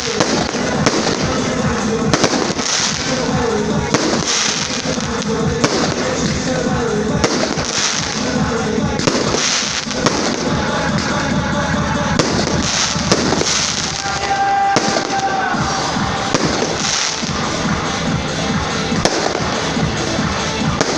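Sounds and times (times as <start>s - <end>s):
fireworks crackle: 0.0s - 20.9s
music playing: 0.0s - 20.9s
firework shells bursting: 9.0s - 11.2s.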